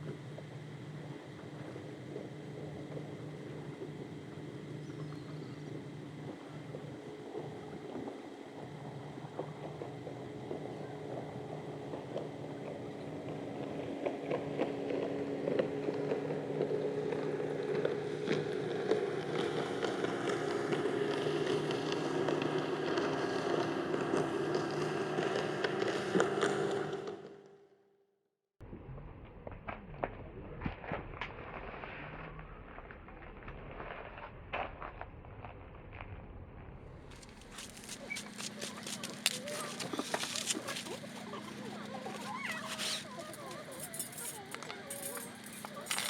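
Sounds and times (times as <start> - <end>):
boat motor hum: 0.0 - 27.5, 36.7 - 46.0
small crackles: 37.1 - 46.0.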